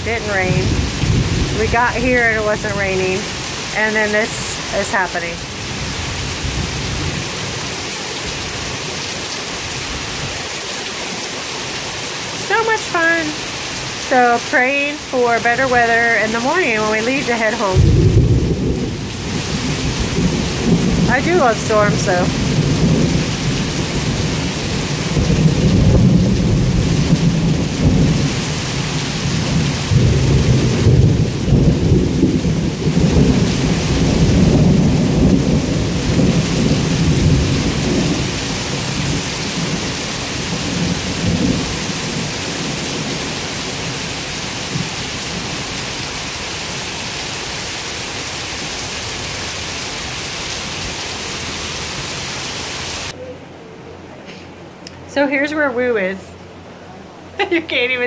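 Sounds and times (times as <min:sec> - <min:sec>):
thunder rumbling: 0:00.0 - 0:07.7, 0:12.4 - 0:46.2
heavy rain pouring: 0:00.0 - 0:53.2.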